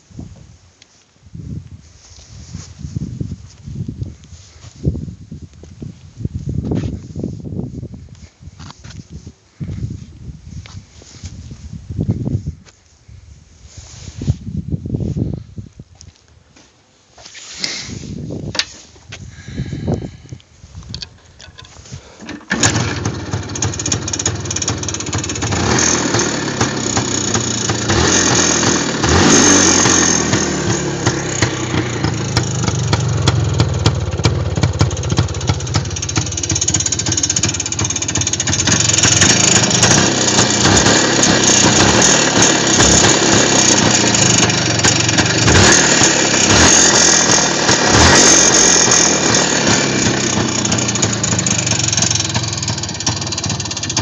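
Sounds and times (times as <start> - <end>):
two-stroke motorcycle engine revving: 22.4 - 54.0.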